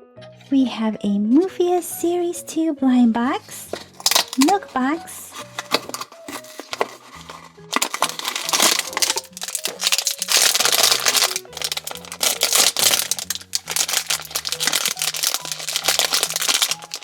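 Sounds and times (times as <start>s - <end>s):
packaging crinkling and rustling: 3.7s - 4.7s, 5.3s - 17.0s.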